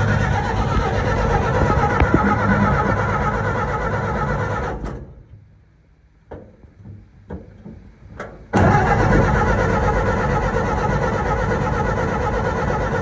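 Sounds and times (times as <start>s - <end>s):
engine starter cranking: 0.0s - 5.1s, 8.5s - 13.0s.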